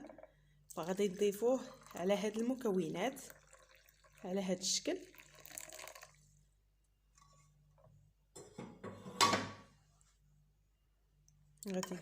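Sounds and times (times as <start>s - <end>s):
hot water pouring: 0.8s - 6.3s.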